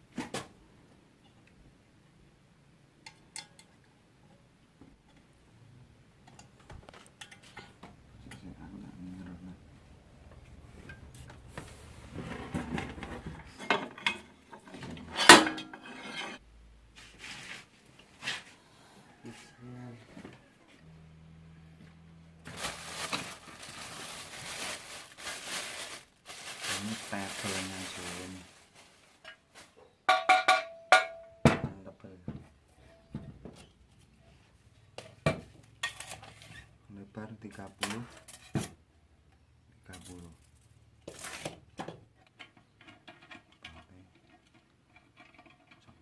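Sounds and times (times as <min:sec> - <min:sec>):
metal tools clattering: 0:06.3 - 0:08.5, 0:12.4 - 0:16.4
metal tools clinking: 0:13.4 - 0:16.4.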